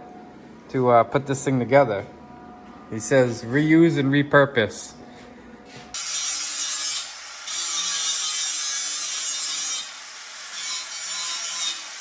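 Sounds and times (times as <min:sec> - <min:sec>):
angle grinder grinding steel: 0:06.0 - 0:12.0.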